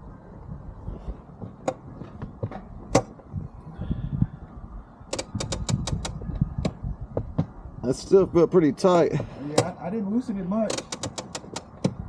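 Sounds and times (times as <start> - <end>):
brake pedal knocks: 10.7 - 12.0
parking brake ratchet clicking: 10.7 - 12.0.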